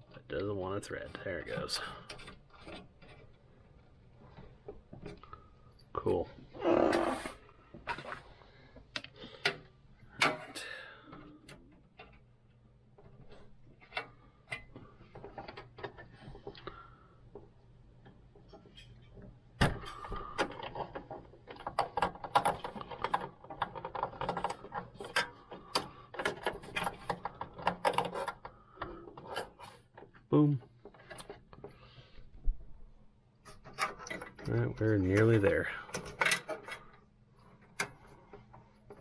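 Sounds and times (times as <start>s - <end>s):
plastic clicking and wires rustling: 11.1s - 32.2s.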